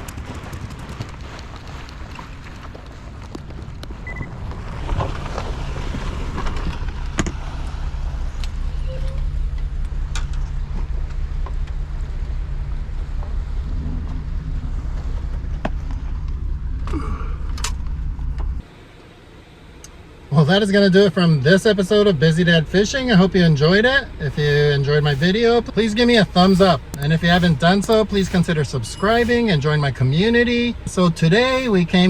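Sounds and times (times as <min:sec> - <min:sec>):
scattered clicks: 0:00.0 - 0:07.8, 0:24.2 - 0:29.7, 0:30.8 - 0:32.0
car engine running: 0:00.0 - 0:32.0
road noise: 0:00.0 - 0:32.0.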